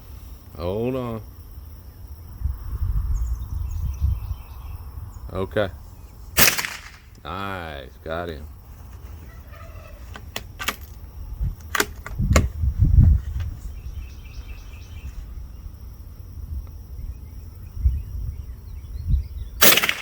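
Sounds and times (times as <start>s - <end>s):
rifle clicks: 6.4s - 7.2s, 11.6s - 12.5s, 19.6s - 20.0s
rifle shot: 6.4s - 7.2s, 19.6s - 20.0s.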